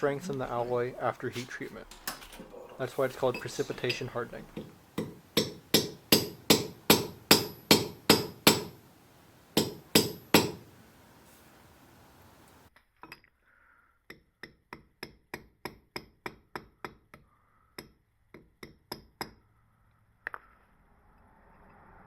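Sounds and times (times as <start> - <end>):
hammer tapping metal ring: 3.4 - 8.8, 9.6 - 10.6.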